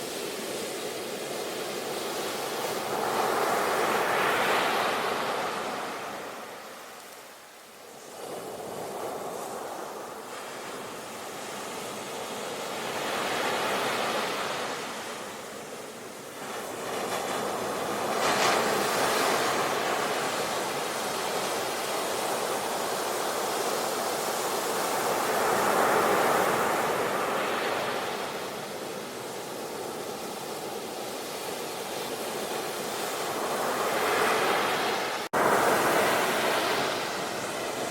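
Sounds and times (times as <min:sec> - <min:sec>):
ocean waves breaking: 0:08.1 - 0:37.9.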